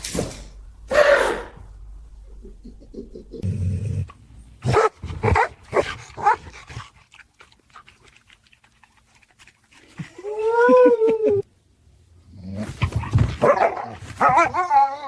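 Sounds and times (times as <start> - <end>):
dog barking: 4.6 - 6.4.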